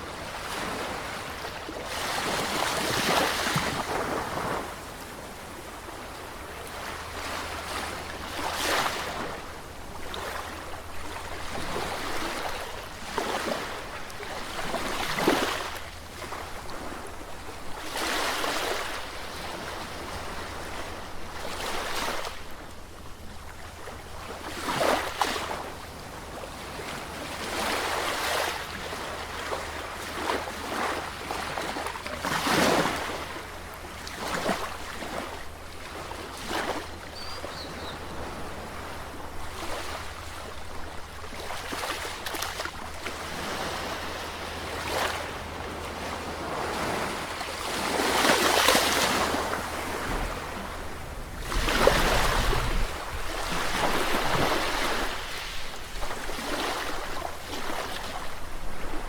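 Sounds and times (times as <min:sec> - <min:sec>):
sea waves washing in: 0:38.1 - 0:59.0.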